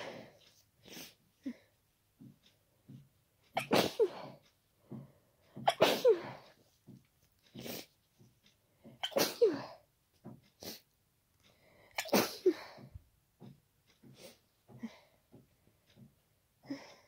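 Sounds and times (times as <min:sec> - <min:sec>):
breaths and sniffs: 0:00.0 - 0:01.8, 0:07.4 - 0:09.0, 0:10.5 - 0:13.0, 0:14.0 - 0:15.3
person sneezing wetly: 0:03.6 - 0:04.3, 0:05.7 - 0:06.4, 0:09.0 - 0:09.7.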